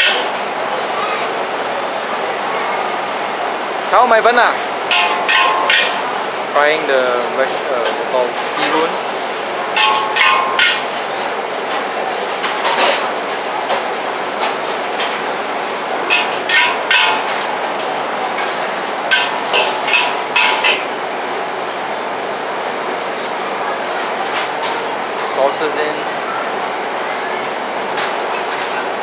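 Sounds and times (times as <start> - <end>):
metal spatula clanking on wok: 0.0 - 0.3, 4.9 - 6.2, 9.8 - 11.4, 16.1 - 21.0.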